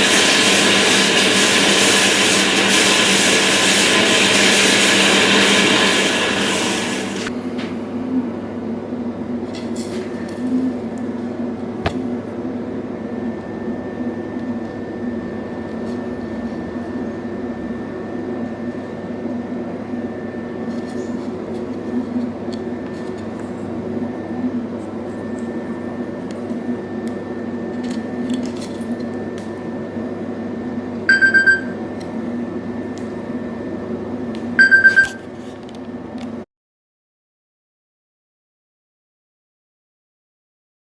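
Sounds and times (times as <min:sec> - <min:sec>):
short beeps: 0:31.1 - 0:31.8, 0:34.6 - 0:35.2.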